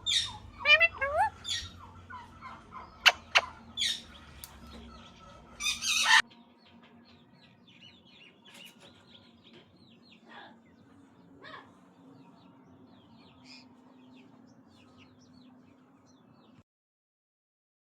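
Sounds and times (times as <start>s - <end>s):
parrot harsh call: 0.0s - 1.8s.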